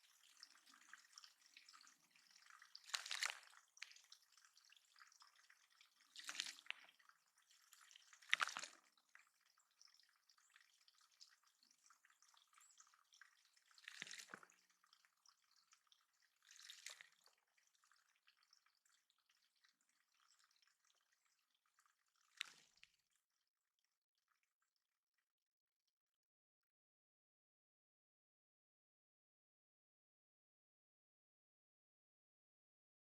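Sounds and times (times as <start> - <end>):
faint water trickle: 0.0 - 25.7
water splashing into pond: 0.3 - 4.4, 5.0 - 7.1, 8.0 - 9.0, 13.8 - 14.6, 16.4 - 17.2, 22.2 - 22.9.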